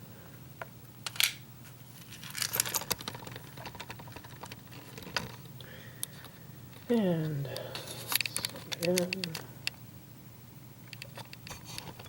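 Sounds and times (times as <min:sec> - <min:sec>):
metal lock pins clicking: 0:08.1 - 0:09.4.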